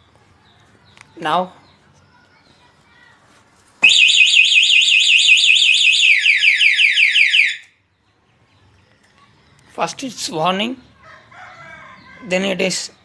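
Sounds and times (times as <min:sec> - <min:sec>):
motorcycle alarm siren: 0:03.8 - 0:07.7.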